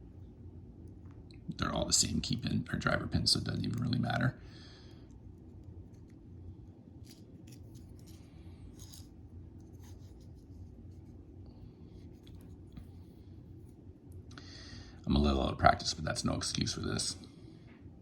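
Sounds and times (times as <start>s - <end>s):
steady low hum: 0.0s - 18.0s
small clicks and scraping: 5.0s - 10.7s.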